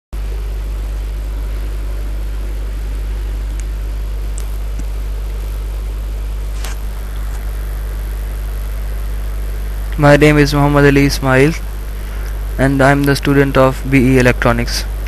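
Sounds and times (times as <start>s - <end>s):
steady low hum: 0.1s - 15.0s
faint clicks: 3.4s - 4.9s.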